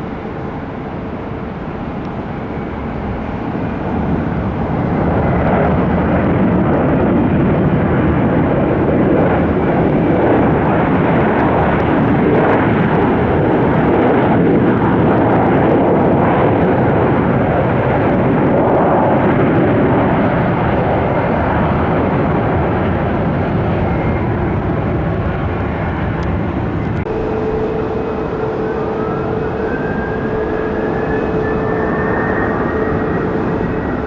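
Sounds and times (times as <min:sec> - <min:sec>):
jet engines easing off: 0:00.0 - 0:34.0
jet engines spooling up: 0:21.8 - 0:34.0.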